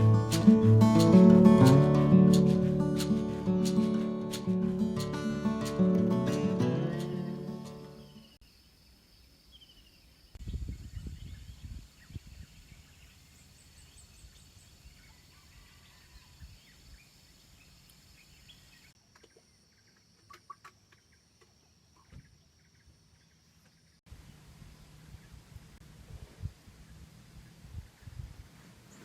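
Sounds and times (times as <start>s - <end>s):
wind rumble on microphone: 10.4s - 13.0s, 24.5s - 29.0s.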